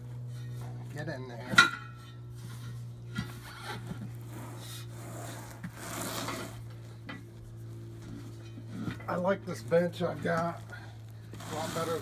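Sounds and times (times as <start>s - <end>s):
tire scraping off metal rim: 2.5s - 6.8s, 11.3s - 12.0s.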